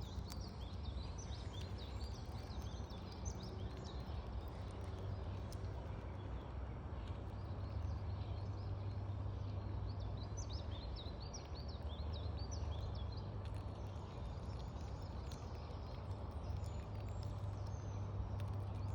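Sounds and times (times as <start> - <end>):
small birds chirping: 0.0 - 18.9
steady low rumble: 0.0 - 18.9.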